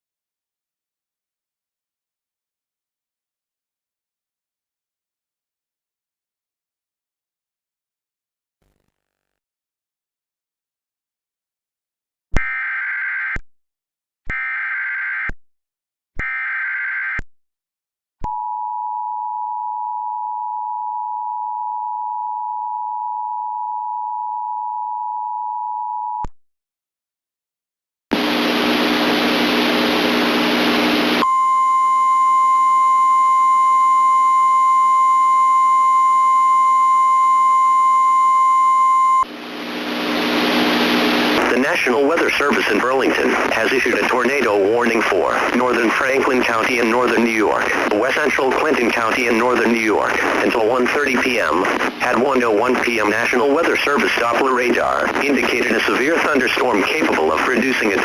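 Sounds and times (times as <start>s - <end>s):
static hiss: 28.2s - 31.2s, 39.3s - 44.0s, 44.9s - 53.2s
two-tone attention signal: 31.2s - 39.3s.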